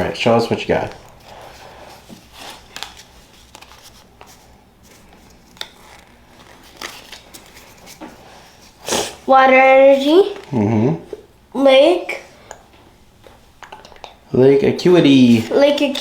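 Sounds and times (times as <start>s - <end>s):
trading cards rustling and clicking: 0.8s - 8.8s, 15.3s - 16.0s
wrapper crinkling: 2.2s - 8.0s.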